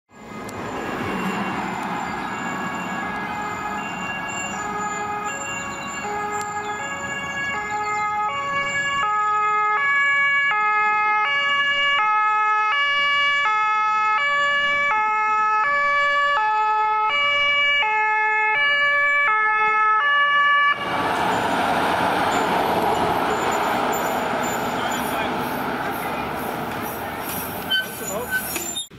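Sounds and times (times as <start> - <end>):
two-tone fire engine siren: 0.2 - 28.4
loud rushing noise: 20.8 - 27.6.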